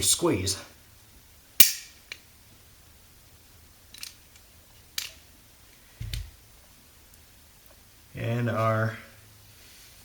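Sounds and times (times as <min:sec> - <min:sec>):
crimping tool snap: 0:01.6 - 0:02.2.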